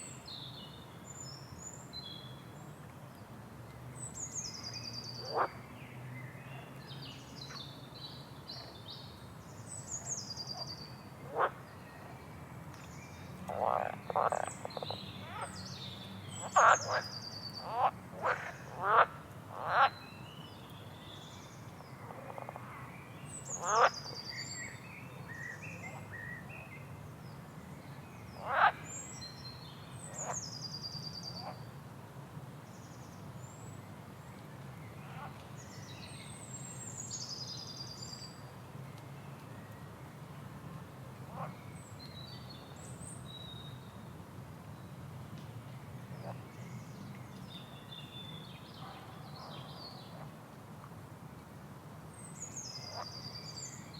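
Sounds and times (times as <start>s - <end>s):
frogs croaking: 5.2s - 5.6s, 11.2s - 11.6s, 13.5s - 15.5s, 16.4s - 20.0s, 22.0s - 22.9s, 23.6s - 24.1s, 28.4s - 28.9s.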